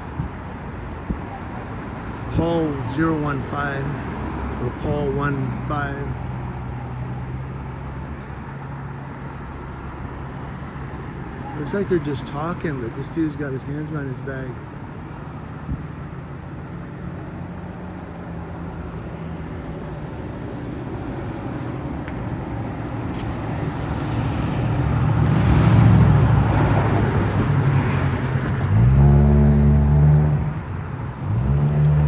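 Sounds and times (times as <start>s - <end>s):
low engine hum: 0.0s - 32.0s
vehicle passing: 16.0s - 32.0s
engine accelerating: 24.5s - 32.0s.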